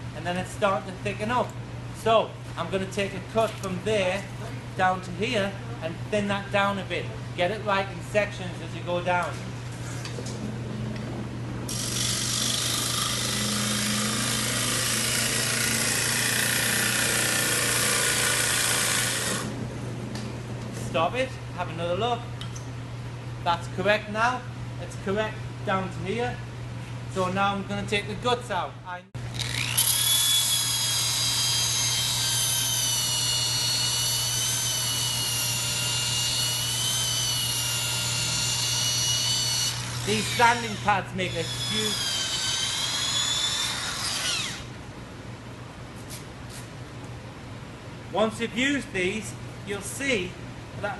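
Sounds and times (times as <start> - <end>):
power tool whining: 11.7 - 19.6, 29.3 - 44.7
wood lathe humming: 11.7 - 19.6, 29.4 - 44.7.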